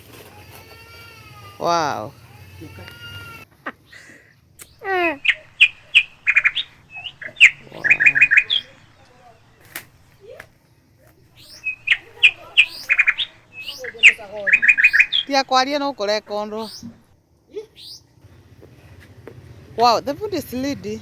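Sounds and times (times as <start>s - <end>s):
bird singing sharp chirps: 4.6s - 10.4s, 11.4s - 17.0s
rising bird call: 4.6s - 10.4s, 11.4s - 17.0s.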